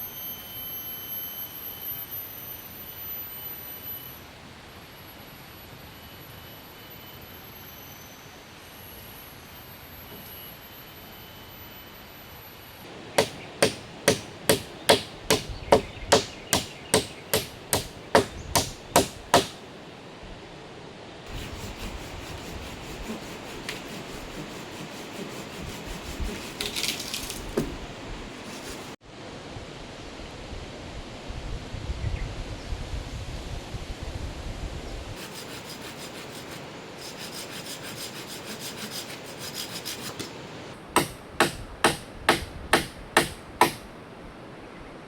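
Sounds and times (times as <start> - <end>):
scraping and knocking on timber: 12.9 - 19.6, 21.3 - 29.0, 35.2 - 40.4, 41.0 - 43.8
hammer driving nail into wood: 13.0 - 19.6, 41.0 - 43.9.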